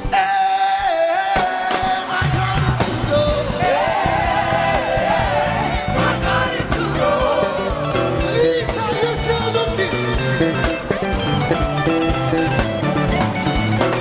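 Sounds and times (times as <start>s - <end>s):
live band bass and drums: 0.0s - 14.0s
choir and congregation singing: 0.2s - 9.0s.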